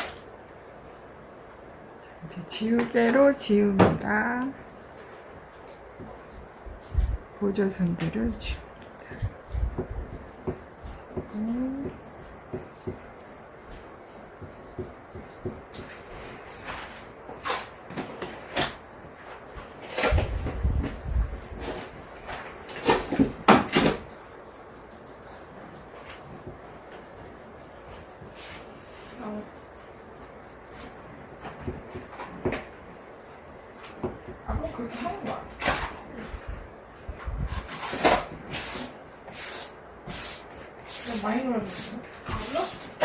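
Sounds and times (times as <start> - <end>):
eraser rubbing on paper: 8.1 - 16.6, 18.2 - 35.4, 37.8 - 43.0.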